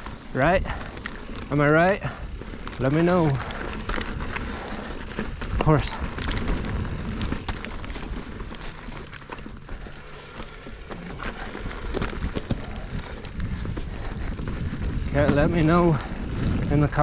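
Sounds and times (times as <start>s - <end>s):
bike tyres crunching on frosty dirt: 0.0s - 17.0s
small clicks and rattles: 0.0s - 17.0s
wind on microphone: 3.3s - 8.5s, 11.2s - 17.0s.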